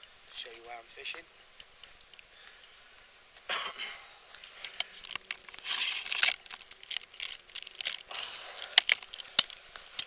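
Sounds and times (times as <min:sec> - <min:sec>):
rustling and crinkling handling: 0:00.3 - 0:10.0.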